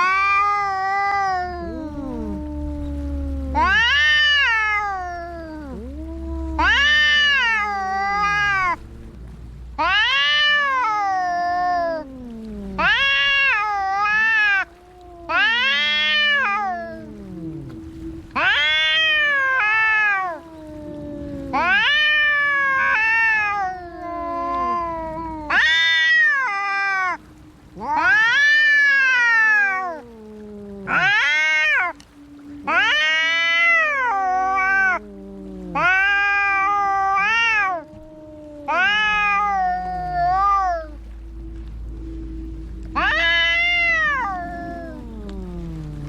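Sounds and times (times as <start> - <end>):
cats moaning: 0.0 - 46.0
cats yowling: 0.0 - 46.0.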